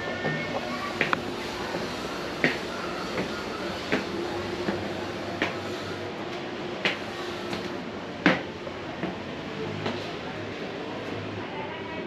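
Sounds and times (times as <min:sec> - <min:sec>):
footsteps walking: 0:00.0 - 0:05.9.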